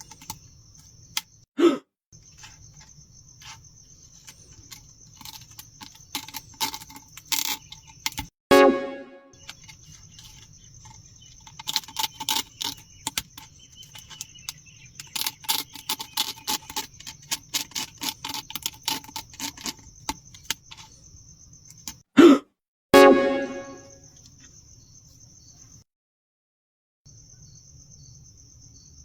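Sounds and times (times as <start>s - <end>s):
needle clicking on candy: 9.4s - 21.0s.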